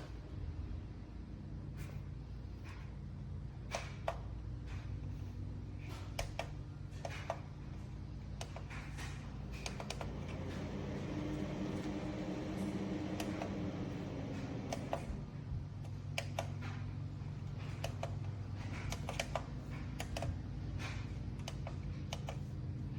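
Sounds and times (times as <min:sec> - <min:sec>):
booster fan humming: 0:00.0 - 0:22.9
light clicks: 0:17.5 - 0:22.5.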